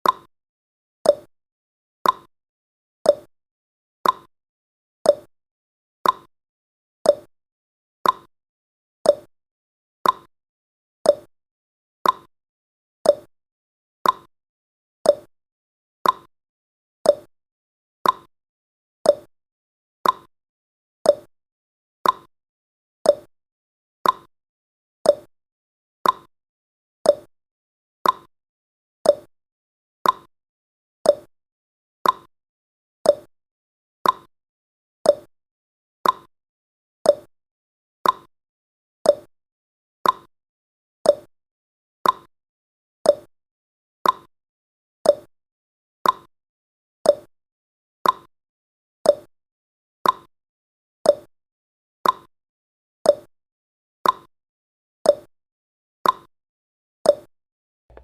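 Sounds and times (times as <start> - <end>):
timer ticking clicks: 0.0 - 0.3, 1.0 - 1.3, 2.0 - 2.3, 3.1 - 3.3, 4.0 - 4.3, 5.1 - 5.3, 6.0 - 6.3, 7.1 - 7.3, 8.0 - 8.3, 9.0 - 9.3, 10.0 - 10.3, 11.0 - 11.3, 12.0 - 12.3, 13.0 - 13.3, 14.0 - 14.3, 15.0 - 15.3, 16.0 - 16.3, 17.0 - 17.3, 18.0 - 18.3, 19.1 - 19.3, 20.0 - 20.3, 21.0 - 21.3, 22.0 - 22.3, 23.0 - 23.3, 24.0 - 24.3, 25.0 - 25.3, 26.0 - 26.3, 27.0 - 27.3, 28.0 - 28.3, 29.0 - 29.3, 30.0 - 30.3, 31.0 - 31.3, 32.0 - 32.3, 33.0 - 33.3, 34.0 - 34.3, 35.0 - 35.3, 36.0 - 36.3, 37.1 - 37.3, 38.0 - 38.3, 39.0 - 39.3, 40.0 - 40.3, 41.1 - 41.3, 42.0 - 42.3, 43.1 - 43.3, 44.0 - 44.3, 45.1 - 45.3, 46.0 - 46.3, 47.1 - 47.3, 48.0 - 48.3, 50.0 - 50.3, 52.0 - 52.3, 54.0 - 54.3, 56.0 - 56.3.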